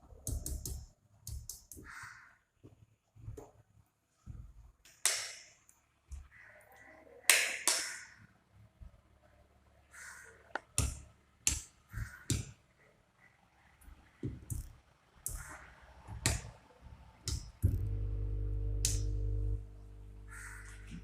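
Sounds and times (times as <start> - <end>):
sharp clicks and knocks: 14.2 - 15.4, 17.3 - 18.0
loud steady electrical buzz: 17.3 - 21.0.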